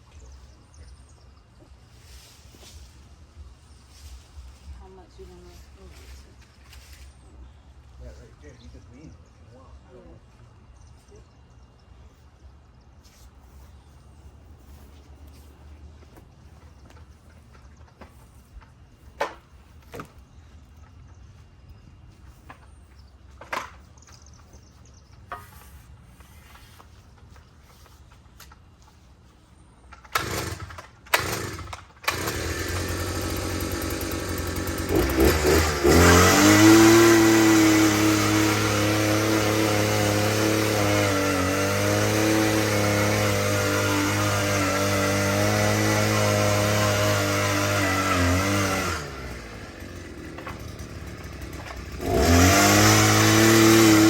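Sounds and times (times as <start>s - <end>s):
engine starting and running: 29.9s - 54.0s.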